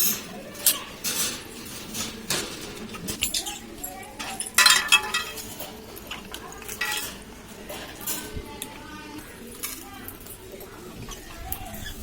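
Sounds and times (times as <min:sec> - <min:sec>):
dishes clinking and scraping: 0:00.0 - 0:08.9.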